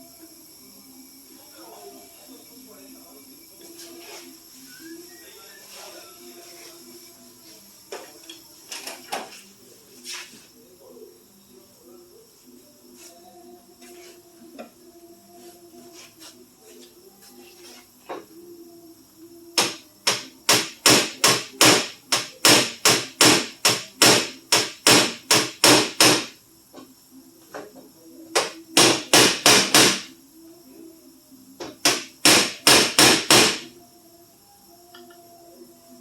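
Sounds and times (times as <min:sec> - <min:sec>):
hammer tapping sheet metal: 0:19.6 - 0:26.3, 0:28.4 - 0:30.1, 0:31.8 - 0:33.7.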